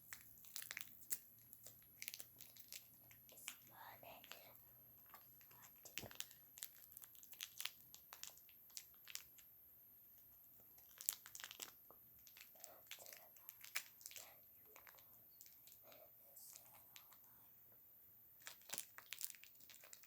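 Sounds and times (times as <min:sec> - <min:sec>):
plastic packaging crinkling: 0:00.0 - 0:09.5, 0:10.6 - 0:17.3, 0:18.4 - 0:20.0.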